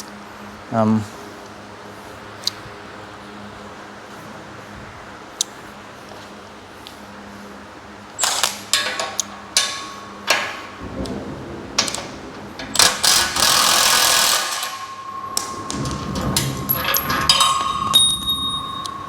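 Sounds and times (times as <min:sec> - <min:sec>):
metal clanks and knocks: 0:08.2 - 0:19.0
metal scraping rattle: 0:08.2 - 0:19.0.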